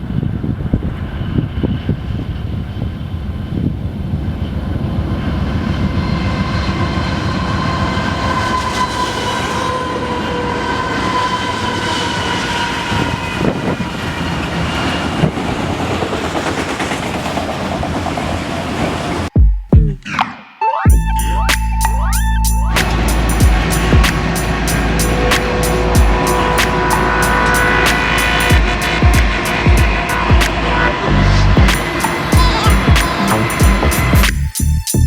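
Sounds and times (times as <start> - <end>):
high train squeal: 0.0 - 19.3, 21.0 - 35.0
train rumbling: 0.0 - 19.3, 20.9 - 35.0.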